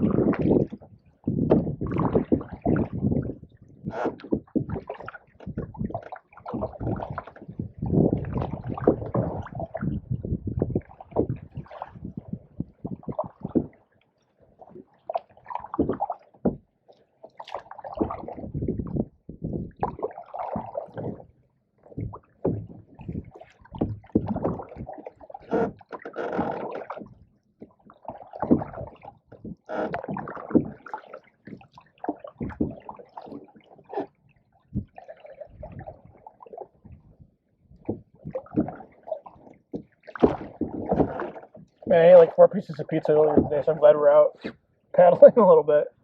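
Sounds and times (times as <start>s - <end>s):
canoe paddles splashing in water: 0.0s - 46.0s.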